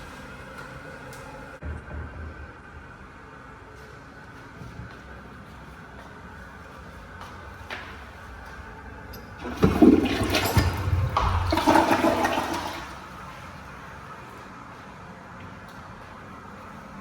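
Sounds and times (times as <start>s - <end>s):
toilet flush water rushing: 9.3s - 13.3s.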